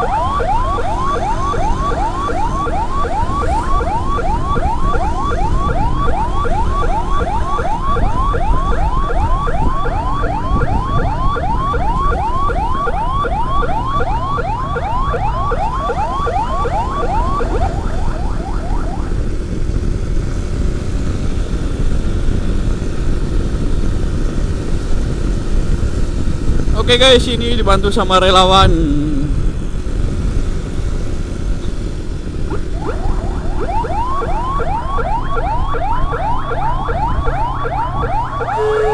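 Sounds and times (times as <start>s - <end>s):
electronic siren yelping: 0.0s - 19.4s, 32.3s - 38.9s
road and wind noise: 0.0s - 38.9s.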